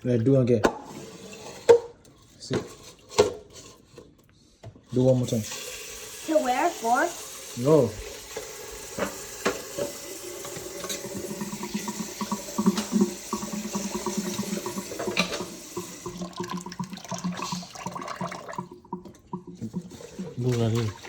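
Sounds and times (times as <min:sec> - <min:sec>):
water running from a tap: 0:05.0 - 0:21.0.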